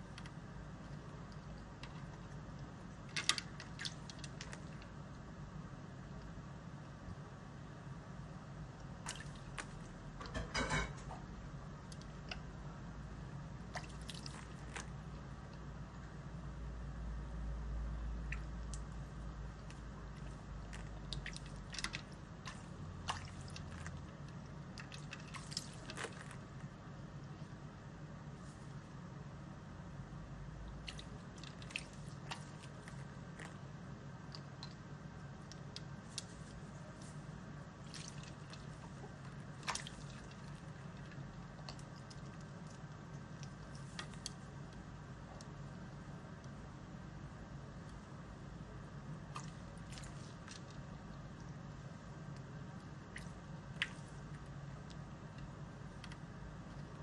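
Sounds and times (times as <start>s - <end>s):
steady low hum: 0.0s - 57.0s
parrot splashing in water: 37.8s - 42.7s.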